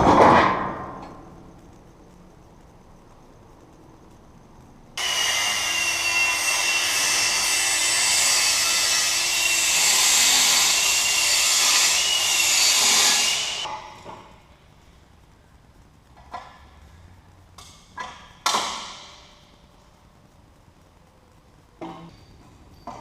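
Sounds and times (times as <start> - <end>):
angle grinder cutting metal pipe: 5.0 - 13.7.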